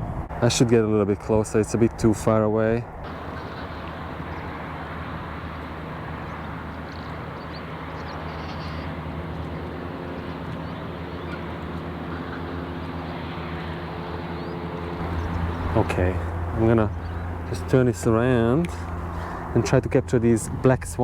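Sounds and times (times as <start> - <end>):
low engine drone: 0.0 - 21.0
outdoor background noise: 0.0 - 21.0
faint bird chirps: 6.4 - 9.0.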